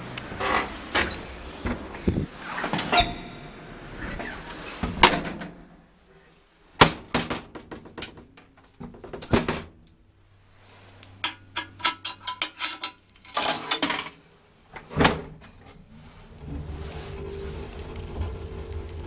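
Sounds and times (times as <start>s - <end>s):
elevator doors clanking and rattling: 0.0s - 5.9s, 6.8s - 9.8s
elevator clatter: 0.3s - 5.7s.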